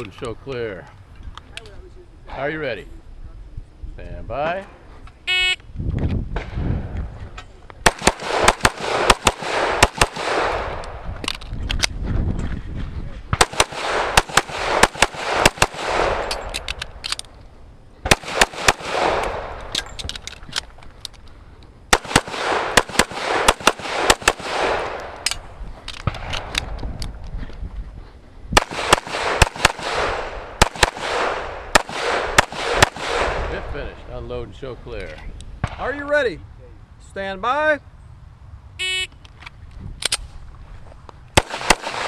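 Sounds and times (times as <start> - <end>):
pistol shots with echo: 7.8 - 11.0, 13.3 - 16.5, 18.0 - 19.7, 21.9 - 25.2, 28.6 - 33.6, 41.4 - 42.0.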